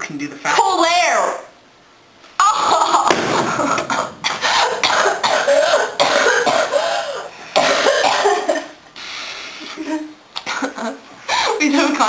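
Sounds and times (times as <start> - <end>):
woman coughing: 4.3 - 8.7.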